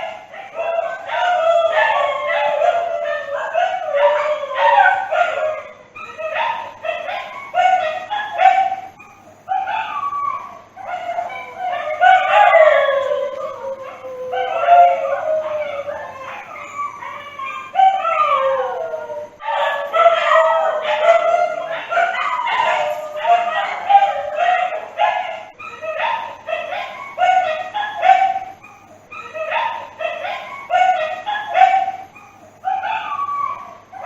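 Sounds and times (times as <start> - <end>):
dog yipping: 0.0 - 12.6, 19.4 - 34.0
dog howling and crying: 0.0 - 34.0.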